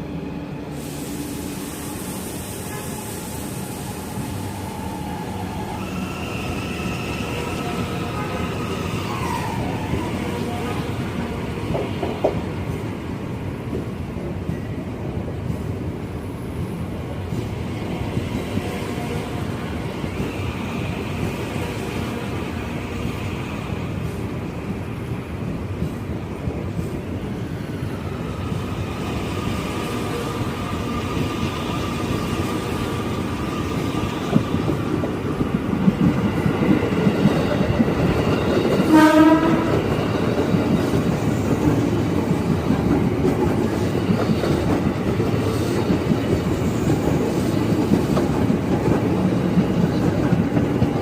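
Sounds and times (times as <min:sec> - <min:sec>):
train wheels rumbling on rails: 0:00.0 - 0:51.0
train horn blast: 0:38.9 - 0:39.8.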